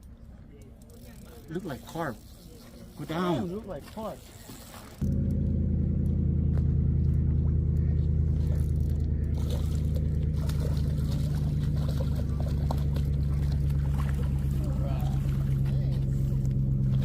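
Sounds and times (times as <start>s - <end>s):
engine humming steadily: 4.9s - 17.0s.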